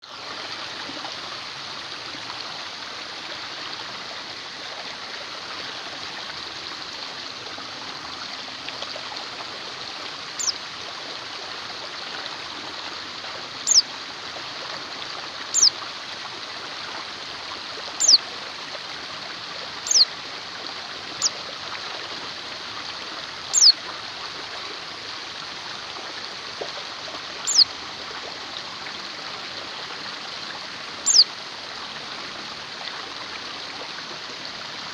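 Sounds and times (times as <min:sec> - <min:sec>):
stream running: 0:00.0 - 0:34.9
small bird chirping: 0:10.4 - 0:10.6, 0:13.6 - 0:13.8, 0:15.5 - 0:15.7, 0:18.0 - 0:18.2, 0:19.8 - 0:20.1, 0:23.5 - 0:23.8, 0:27.4 - 0:27.7, 0:31.0 - 0:31.3.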